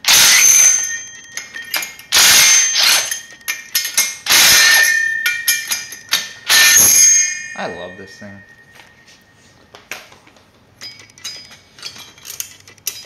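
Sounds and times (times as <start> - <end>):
ratchet ratcheting: 0.0 - 7.1.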